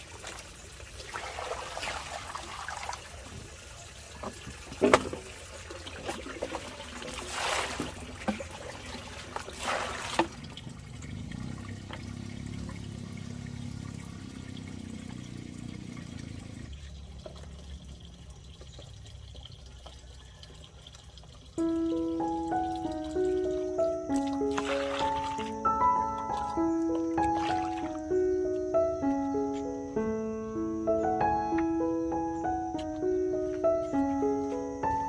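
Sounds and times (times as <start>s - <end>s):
water pouring splashes: 0.0s - 28.2s
water trickling: 0.0s - 29.6s.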